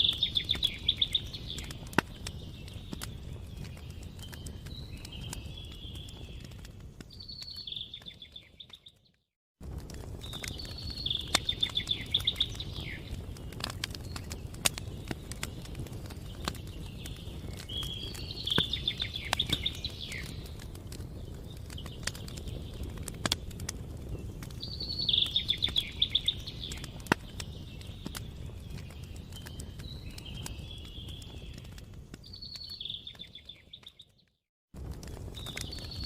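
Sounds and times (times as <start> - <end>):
wood fire crackling and popping: 0.0 - 36.0
songbird trilling: 24.7 - 26.8.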